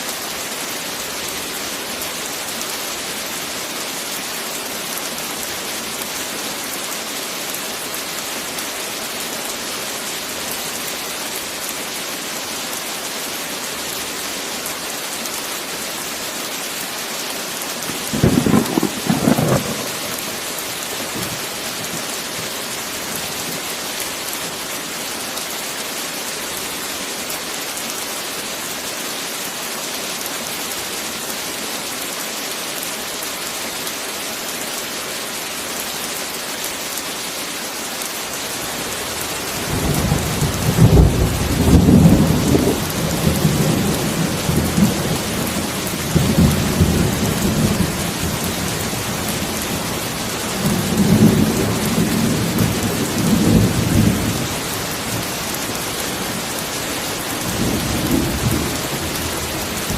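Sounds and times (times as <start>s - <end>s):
heavy rain: 0.0s - 59.9s
thunder rumbling: 17.8s - 22.1s.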